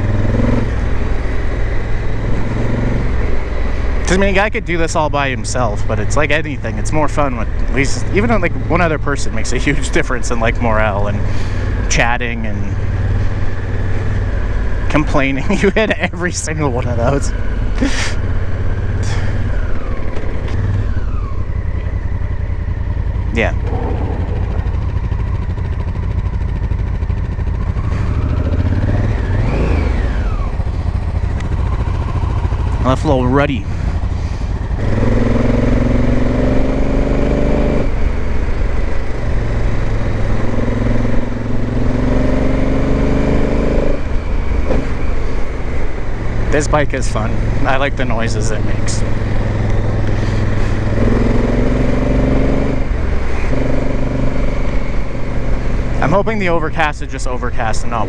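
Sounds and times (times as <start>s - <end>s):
motorcycle engine running: 0.0s - 58.0s
low rumble of wind: 10.7s - 42.4s.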